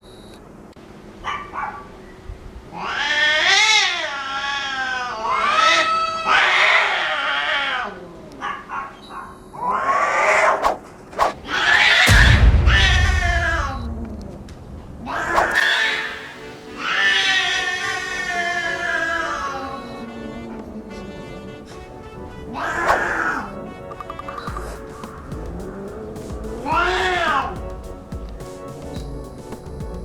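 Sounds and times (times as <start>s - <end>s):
low rumble: 12.1s - 17.0s.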